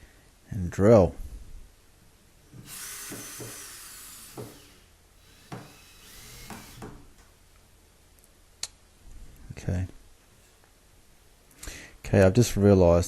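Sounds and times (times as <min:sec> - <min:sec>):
power drill driving screws: 0:02.5 - 0:07.3.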